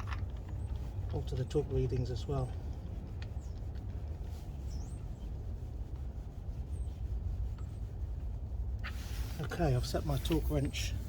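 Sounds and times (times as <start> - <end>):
low background rumble: 0.0 - 11.0
bird chirp: 0.1 - 5.4.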